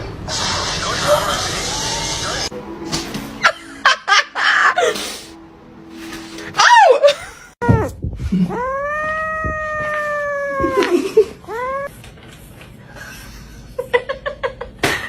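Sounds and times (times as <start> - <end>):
cat meowing: 8.5 - 10.9.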